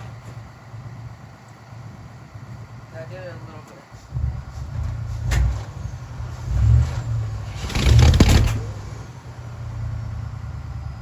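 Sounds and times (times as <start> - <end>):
engine cranking slowly: 4.0 - 11.0.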